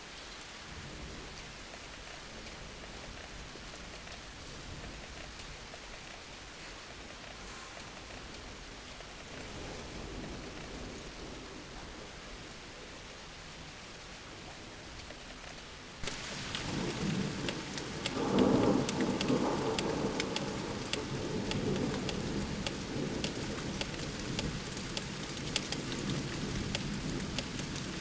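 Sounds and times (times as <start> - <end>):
steady rain: 0.0 - 28.0
raindrops ticking: 0.4 - 12.6, 13.6 - 28.0
thunder rumbling: 7.2 - 13.7, 16.0 - 28.0.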